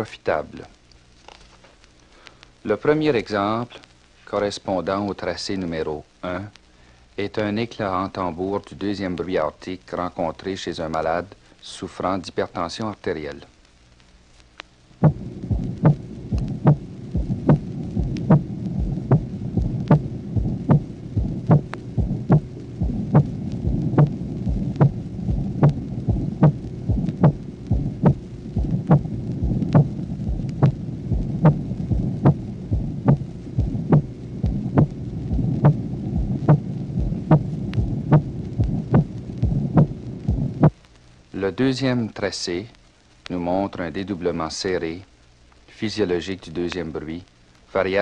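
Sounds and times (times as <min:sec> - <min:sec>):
steady low hum: 0:00.0 - 0:45.8
heart beating: 0:15.0 - 0:40.8.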